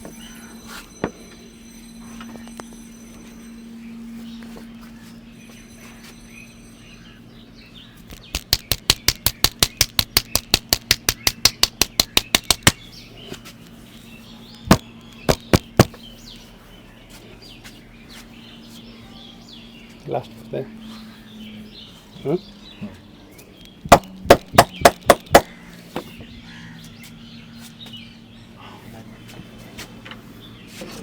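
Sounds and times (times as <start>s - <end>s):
low electrical hum: 0.0s - 31.0s
rapid hand slaps: 8.1s - 12.8s, 23.9s - 25.6s.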